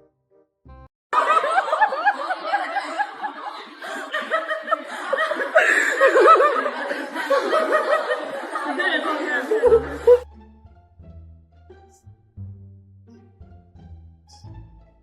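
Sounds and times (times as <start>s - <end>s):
crowd laughing: 1.1s - 10.3s.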